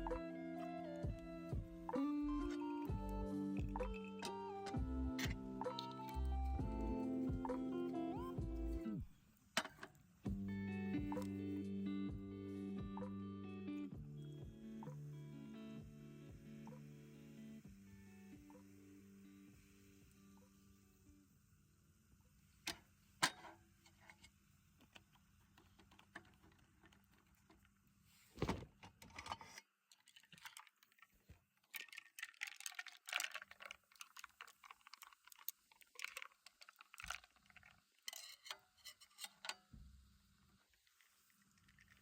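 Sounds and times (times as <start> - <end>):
small hard objects clinking: 29.9 - 38.6.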